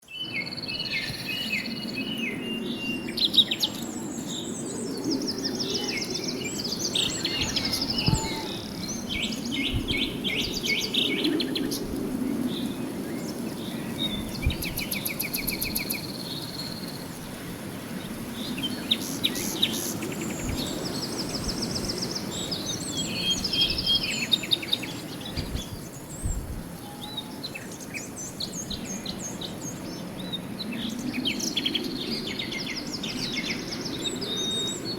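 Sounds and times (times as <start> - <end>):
birds chirping and trilling: 0.2 - 11.8.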